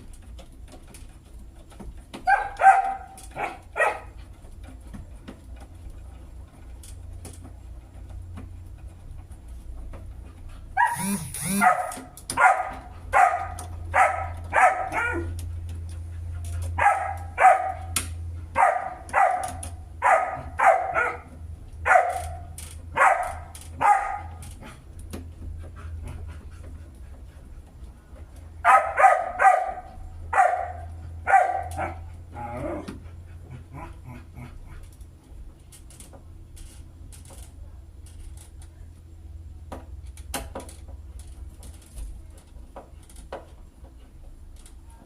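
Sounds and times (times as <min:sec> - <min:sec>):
dog barking: 0:02.3 - 0:04.1, 0:10.8 - 0:15.3, 0:16.8 - 0:18.0, 0:18.6 - 0:24.4, 0:28.6 - 0:32.1.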